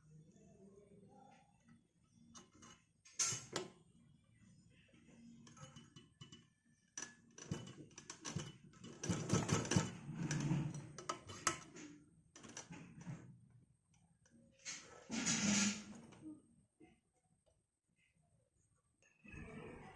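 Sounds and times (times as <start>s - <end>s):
sewing machine clicking: 7.4s - 11.7s.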